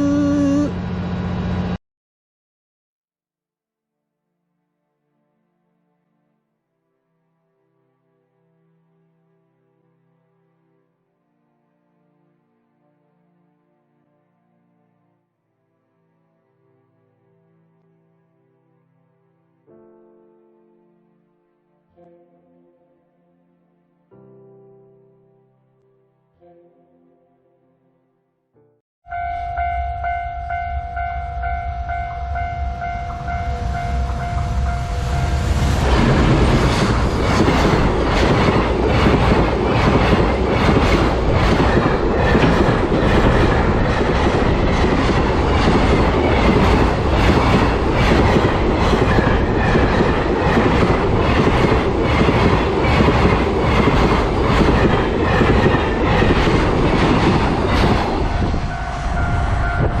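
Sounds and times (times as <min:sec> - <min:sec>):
freight train rumble: 0:00.0 - 0:01.8, 0:29.1 - 1:00.0.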